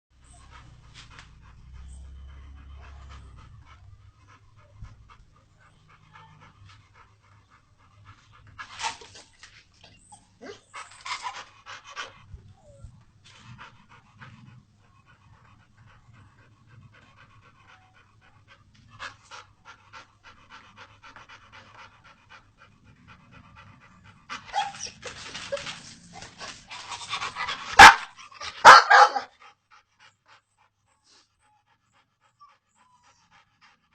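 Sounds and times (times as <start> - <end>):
dog panting: 0.2 - 33.9.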